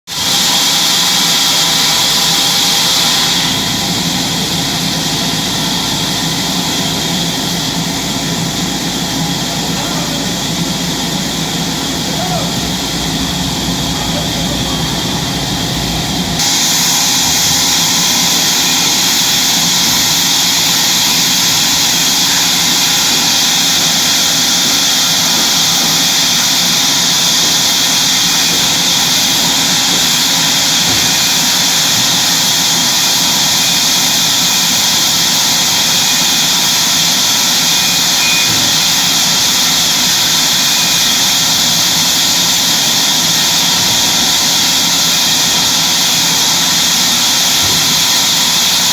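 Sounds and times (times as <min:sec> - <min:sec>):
sawmill saw hissing: 0:00.1 - 0:48.9
low hum: 0:11.2 - 0:18.0.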